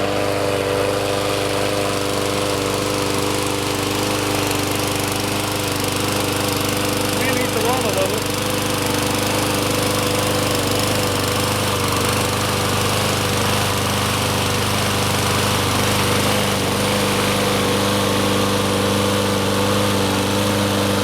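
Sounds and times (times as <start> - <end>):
lawn mower engine running: 0.0 - 21.0.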